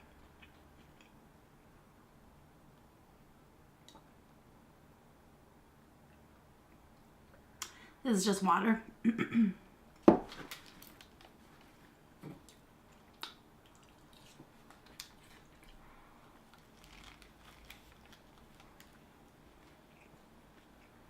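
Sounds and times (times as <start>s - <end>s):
quiet chewing: 0.0s - 1.2s, 10.8s - 21.0s.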